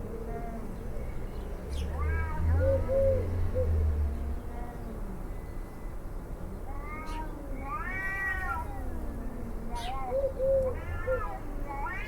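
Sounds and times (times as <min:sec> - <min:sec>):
cat yowling: 0:06.7 - 0:12.0.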